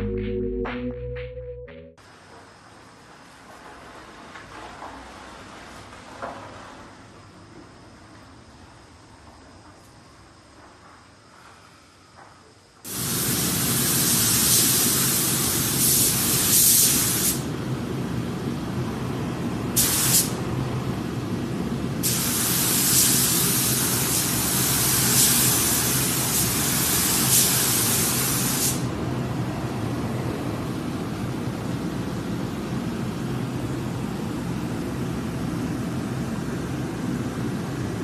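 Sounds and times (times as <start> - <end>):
compressed air hissing: 12.8 - 17.5, 19.8 - 20.4, 22.0 - 28.9.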